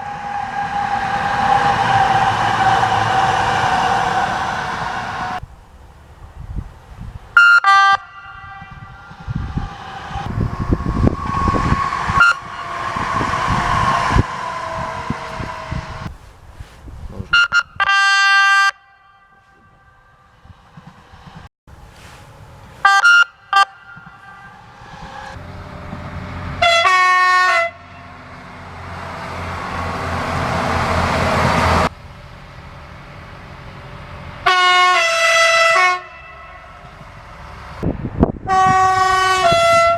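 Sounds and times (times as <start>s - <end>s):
train horn blasts: 0.0s - 5.4s, 7.4s - 16.1s, 17.3s - 20.6s, 22.7s - 31.9s, 34.4s - 37.3s, 38.4s - 39.9s
rumble of passing trains: 0.0s - 39.9s.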